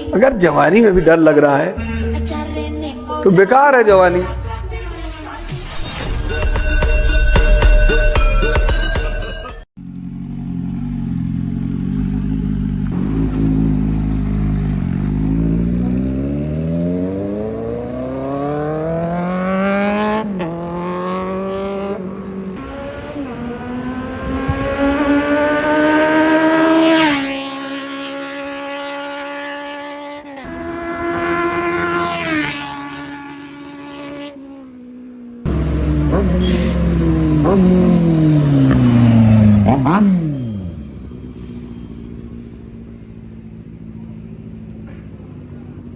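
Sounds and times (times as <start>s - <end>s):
music: 4.1s - 9.6s
motorcycle engine accelerating: 9.8s - 45.9s.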